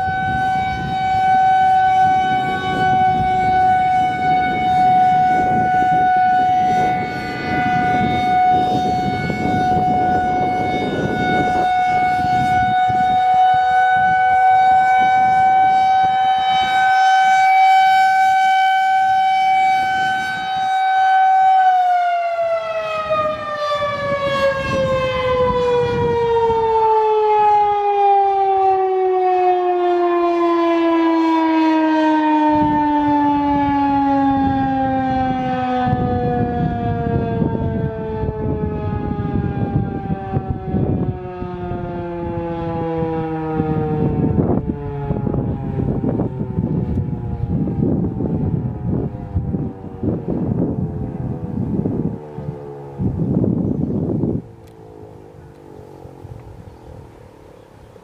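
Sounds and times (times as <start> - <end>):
wind rumble on microphone: 0.0 - 30.4, 31.3 - 58.0
warning siren winding down: 0.0 - 58.0.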